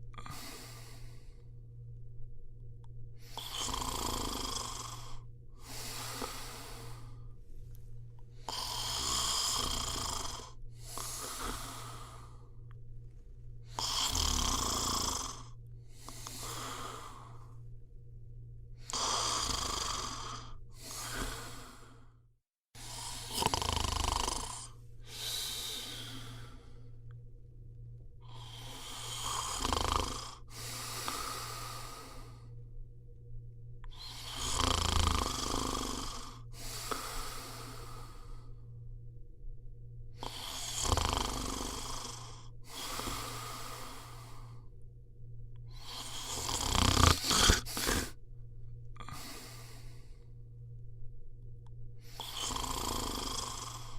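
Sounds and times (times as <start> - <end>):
person snoring: 0.1 - 1.5, 3.2 - 7.4, 8.4 - 12.7, 13.6 - 17.7, 18.8 - 22.2, 22.8 - 27.0, 28.2 - 32.6, 33.8 - 38.7, 40.2 - 44.7, 45.7 - 48.2, 48.9 - 50.3, 52.0 - 53.9.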